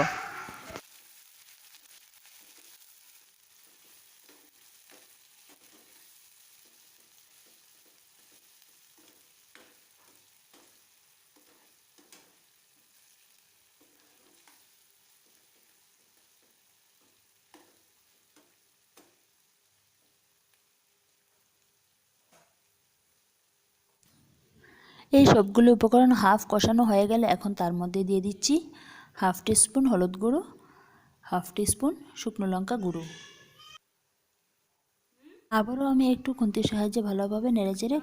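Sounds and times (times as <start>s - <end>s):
paste sizzling in oil: 0.0s - 23.8s.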